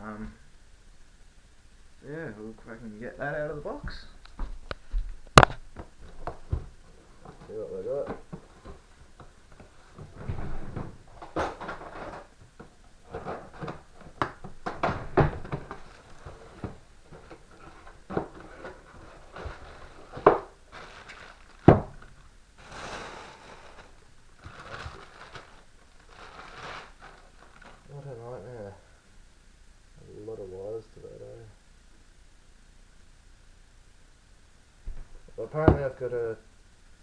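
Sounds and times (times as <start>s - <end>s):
packaging rustling: 6.0s - 27.9s.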